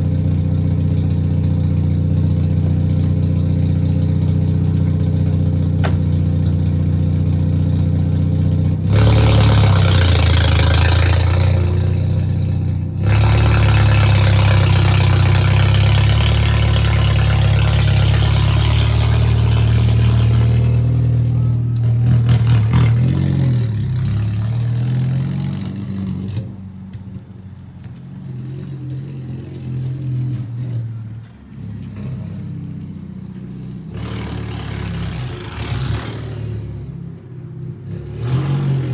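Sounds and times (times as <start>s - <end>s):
car engine running without exhaust: 0.0s - 24.8s.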